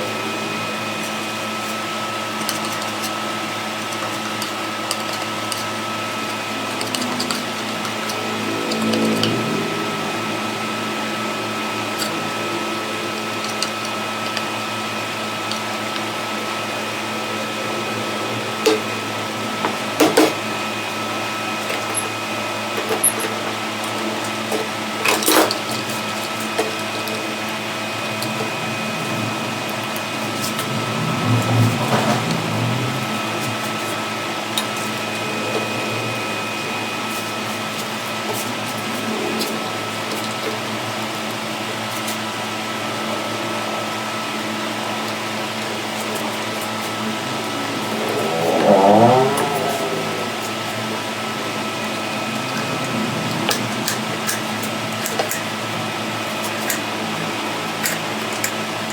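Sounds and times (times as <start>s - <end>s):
small electric motor humming: 46.0s - 55.9s.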